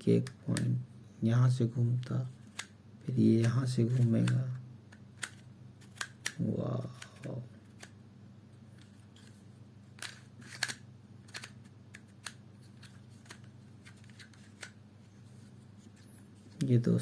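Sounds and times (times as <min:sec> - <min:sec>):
puzzle cube clicking: 0:02.4 - 0:02.7, 0:03.4 - 0:07.9, 0:10.0 - 0:14.8.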